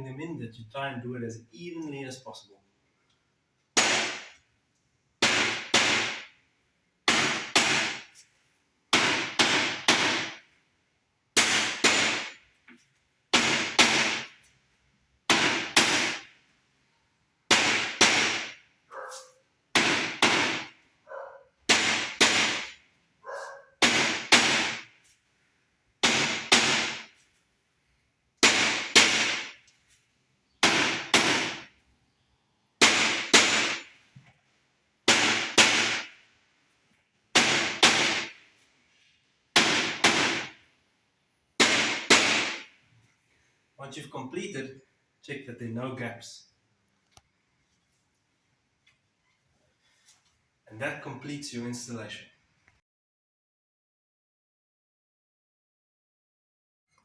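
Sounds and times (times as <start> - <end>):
rubber mallet striking wood: 5.2 - 6.3, 7.1 - 8.0, 8.9 - 10.4, 13.3 - 14.3, 15.3 - 16.2, 17.5 - 18.6, 19.7 - 20.7, 21.7 - 22.7, 23.8 - 24.9, 26.0 - 27.1, 28.4 - 29.6, 30.6 - 31.7, 32.8 - 33.9, 35.1 - 36.1, 39.6 - 40.5.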